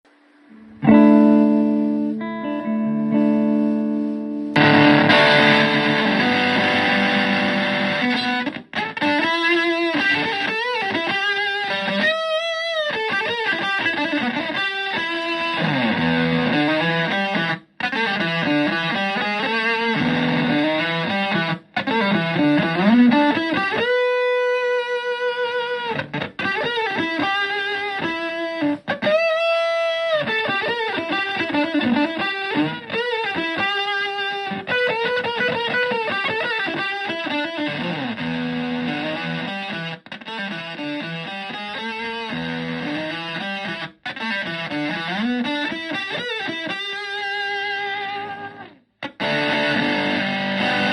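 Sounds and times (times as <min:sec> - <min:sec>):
fuzzed electric guitar: 0:00.0 - 0:50.9.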